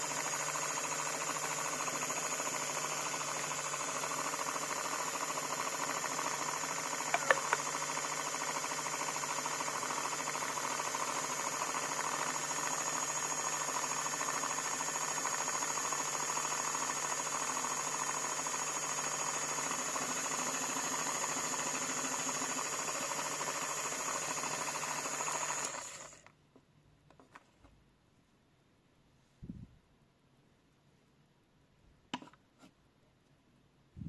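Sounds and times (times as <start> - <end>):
appliance motor whining: 0.0 - 26.3.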